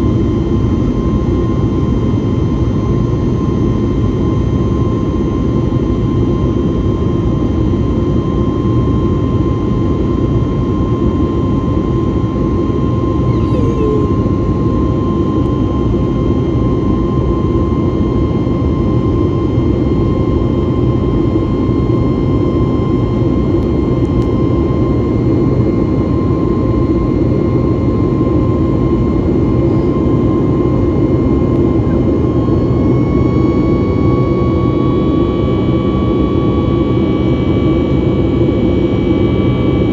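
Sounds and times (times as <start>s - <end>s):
higher tones: 13.3s - 14.6s
jet engine cabin rumble: 28.5s - 36.7s.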